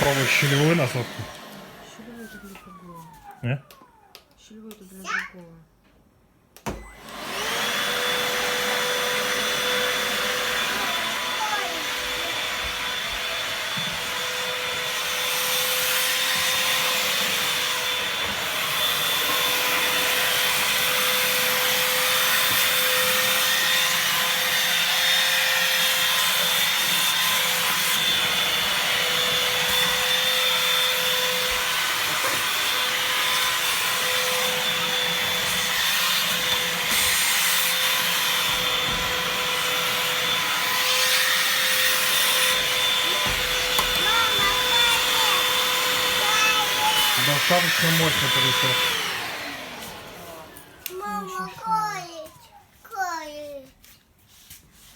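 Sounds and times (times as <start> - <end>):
handheld vacuum cleaner running: 0.0 - 4.2, 6.7 - 52.0.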